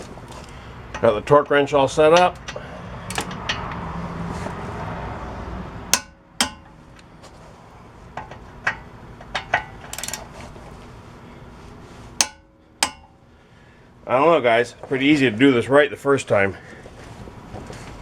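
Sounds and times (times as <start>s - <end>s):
metal rattle: 0.0s - 3.9s, 5.9s - 7.4s, 8.1s - 10.5s, 12.2s - 13.3s
metallic clinks of hand tools: 12.2s - 13.1s.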